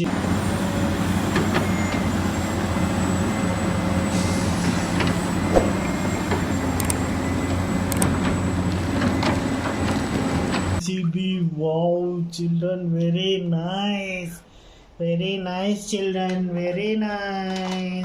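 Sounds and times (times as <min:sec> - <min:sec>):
heavy vehicle engine running: 0:00.0 - 0:10.8
scattered clicks: 0:06.8 - 0:07.0.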